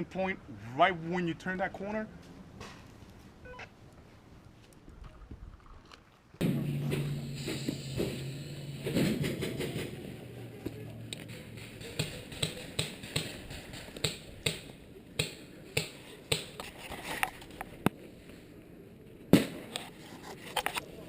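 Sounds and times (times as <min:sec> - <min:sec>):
paintball markers firing: 0:11.1 - 0:16.6.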